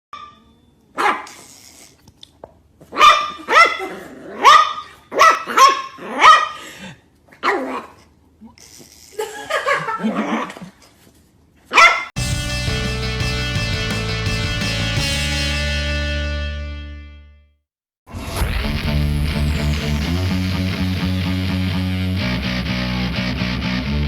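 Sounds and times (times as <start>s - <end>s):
dog barking: 3.0s - 6.6s, 11.7s - 12.1s.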